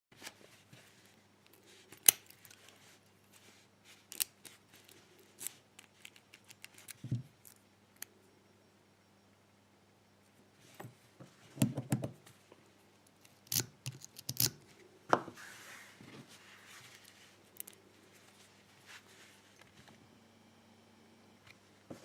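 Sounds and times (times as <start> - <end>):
soft scraping: 15.3 - 17.4.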